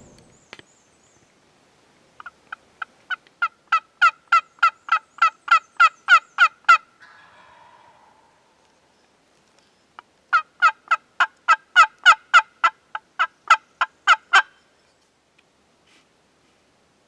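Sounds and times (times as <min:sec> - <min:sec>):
turkey calling: 0:03.1 - 0:09.1.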